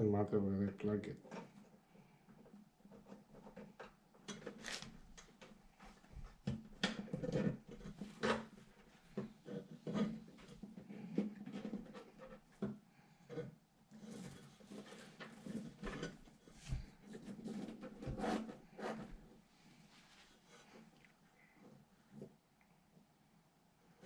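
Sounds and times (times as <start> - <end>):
hands handling computer parts: 2.9 - 5.6.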